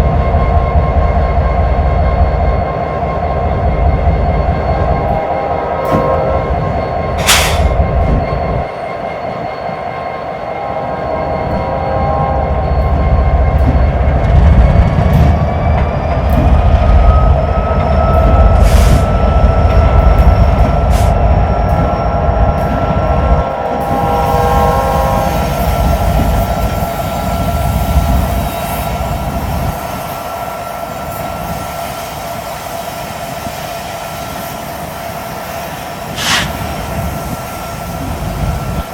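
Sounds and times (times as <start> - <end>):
train wheels squealing: 0.0 - 38.9
wind rumbling on microphone: 5.9 - 9.4
sharp clanks: 7.2 - 7.8.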